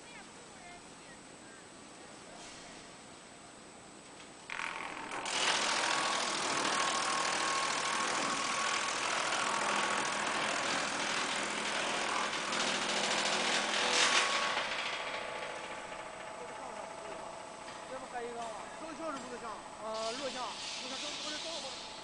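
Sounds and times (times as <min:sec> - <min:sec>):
wood chipper running: 0:04.5 - 0:22.0.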